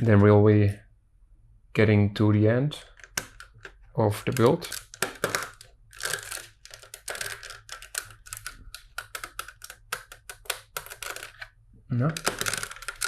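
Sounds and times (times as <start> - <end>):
plastic bricks clicking and rattling: 2.9 - 11.5, 12.1 - 13.0.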